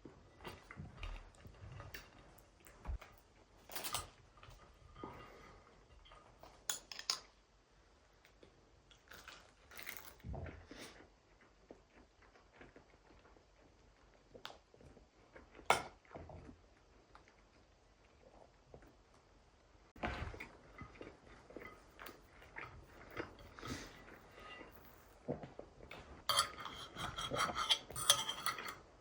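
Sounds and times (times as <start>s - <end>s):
cutlery clinking against dishes: 26.3s - 28.8s.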